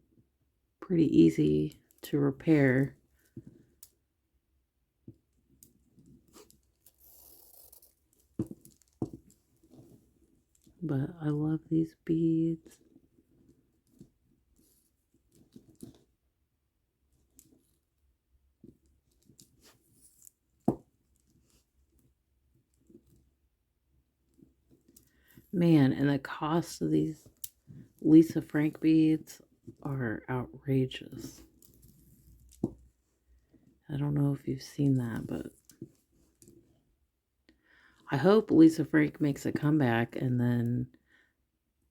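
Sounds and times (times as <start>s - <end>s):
soft rustle: 5.1s - 10.8s, 12.6s - 16.2s, 17.0s - 25.6s, 26.5s - 30.0s, 31.0s - 33.9s, 34.8s - 37.2s.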